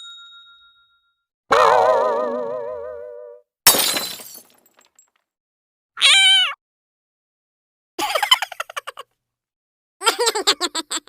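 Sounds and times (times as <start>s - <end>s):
cat meowing: 6.0s - 6.6s.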